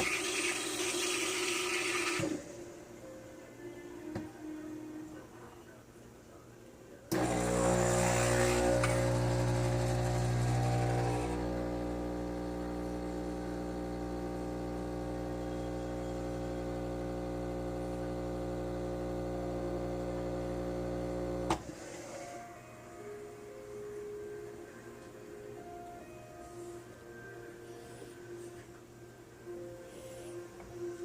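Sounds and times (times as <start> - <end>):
espresso machine pump humming: 0.0 - 2.4, 7.1 - 21.6.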